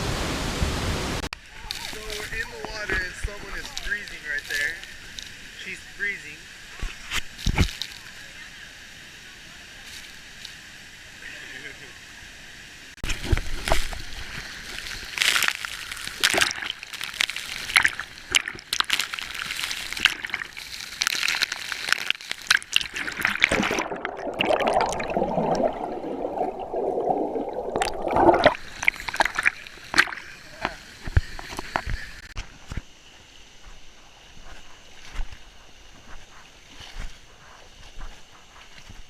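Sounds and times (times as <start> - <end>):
water splashing in plunge pool: 13.0 - 32.4.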